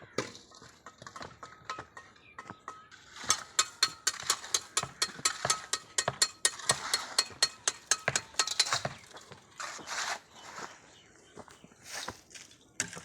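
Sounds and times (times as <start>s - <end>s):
hand tools tapping hard material: 0.5s - 9.4s.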